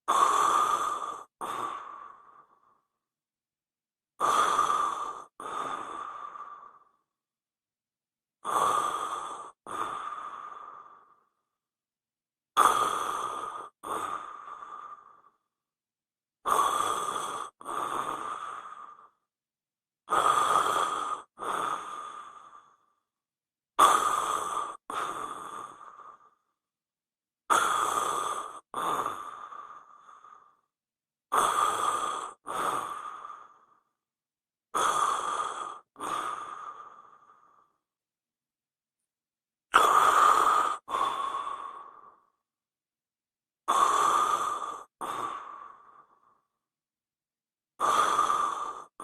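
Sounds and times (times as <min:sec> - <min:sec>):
person snoring: 0:00.1 - 0:02.7, 0:04.2 - 0:06.9, 0:08.4 - 0:11.2, 0:12.6 - 0:15.3, 0:16.4 - 0:19.2, 0:20.1 - 0:22.8, 0:23.8 - 0:26.4, 0:27.5 - 0:30.6, 0:31.3 - 0:33.8, 0:34.8 - 0:37.8, 0:39.7 - 0:42.3, 0:43.7 - 0:46.4, 0:47.8 - 0:49.0.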